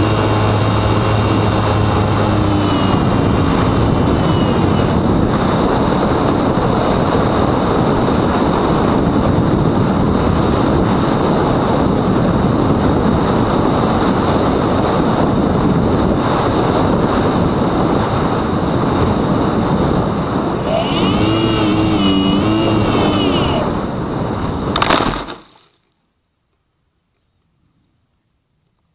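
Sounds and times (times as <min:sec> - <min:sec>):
faint high whine: 0:00.0 - 0:06.0, 0:20.1 - 0:24.5
wind rumble on microphone: 0:00.0 - 0:24.9.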